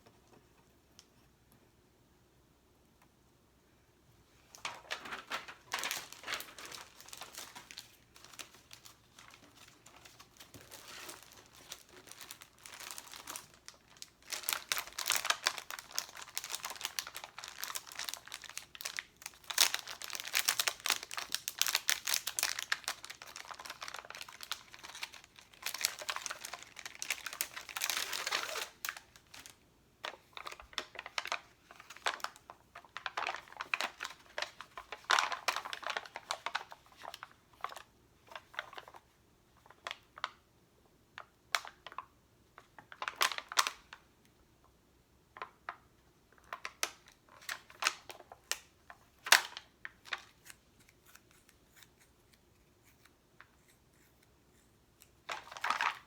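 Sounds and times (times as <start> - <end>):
plastic sticker sheets crinkling: 4.5 - 39.0, 55.1 - 56.0.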